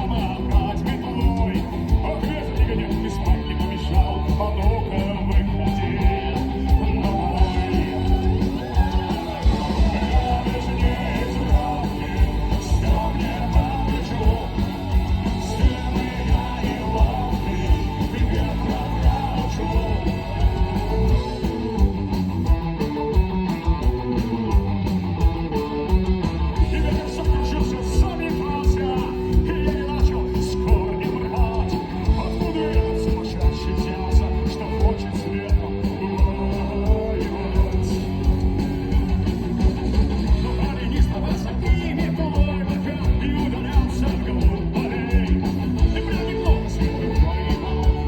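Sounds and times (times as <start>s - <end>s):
person singing: 0.0s - 21.5s
drum beat: 0.0s - 48.0s
electric guitar: 0.0s - 48.0s.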